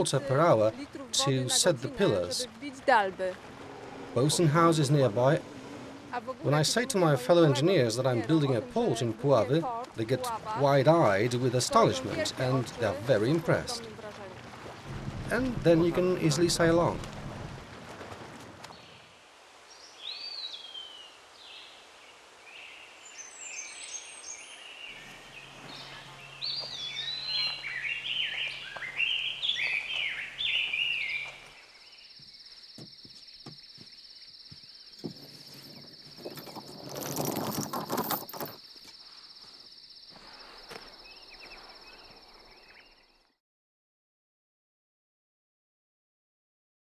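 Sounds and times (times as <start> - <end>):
birds chirping: 0.0 - 17.1, 18.6 - 43.4.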